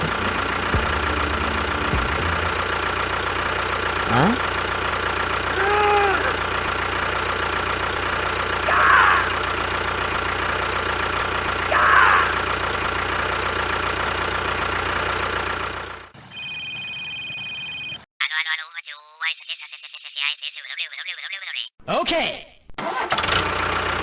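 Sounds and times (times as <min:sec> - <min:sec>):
vehicle engine idling: 0:00.0 - 0:16.3, 0:23.2 - 0:24.0.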